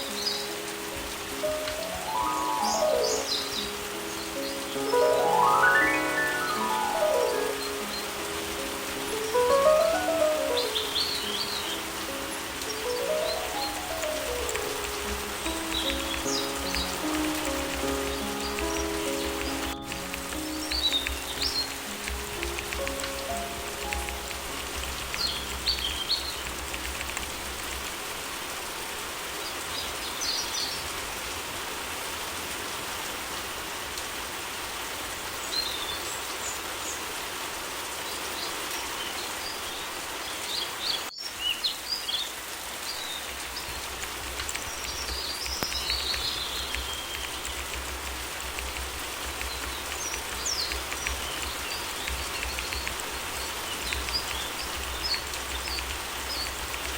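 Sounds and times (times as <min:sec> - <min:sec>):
piano notes: 0:00.0 - 0:28.2
steady rain: 0:00.0 - 0:56.9.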